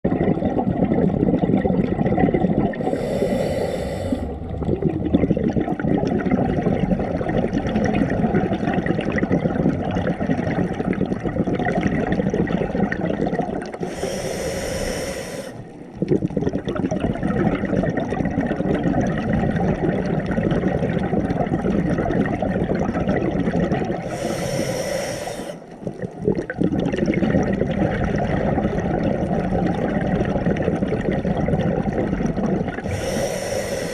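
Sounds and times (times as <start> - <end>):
hissing regulator inhalations: 2.8 - 4.4, 13.8 - 15.7, 24.0 - 25.8, 32.8 - 33.9.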